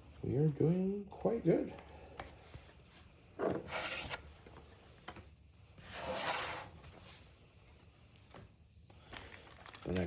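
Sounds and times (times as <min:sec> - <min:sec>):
cards rubbing and rasping: 0:03.6 - 0:04.3, 0:05.8 - 0:06.8.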